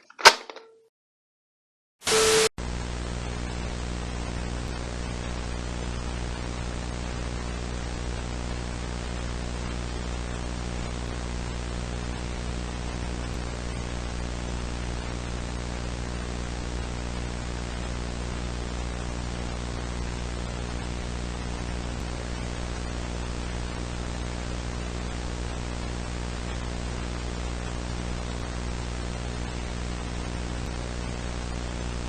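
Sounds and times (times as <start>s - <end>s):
static hiss: 2.0s - 32.0s
low electrical buzzing hum: 2.1s - 32.0s.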